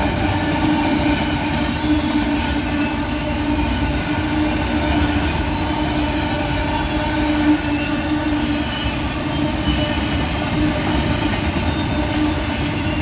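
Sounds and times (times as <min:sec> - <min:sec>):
freight train wheels on rail: 0:00.0 - 0:13.0.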